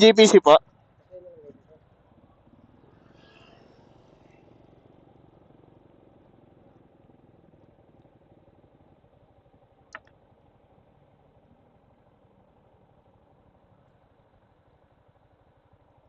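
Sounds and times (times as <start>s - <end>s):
motorcycle engine idling: 0.6s - 16.0s
sharp click: 9.9s - 10.1s.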